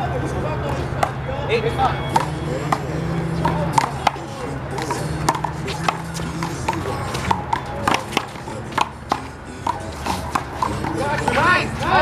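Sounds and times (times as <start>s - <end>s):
low background music: 1.8s - 12.0s
handball slapping and bouncing: 2.1s - 4.2s, 4.8s - 11.4s.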